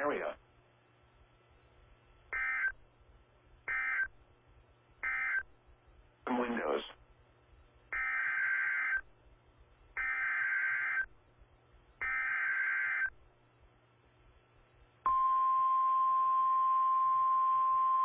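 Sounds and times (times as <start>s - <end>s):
steady warning alarm tone: 2.4s - 2.8s, 3.7s - 4.1s, 5.0s - 5.4s, 8.0s - 9.0s, 10.0s - 11.1s, 12.0s - 13.1s, 15.1s - 18.0s.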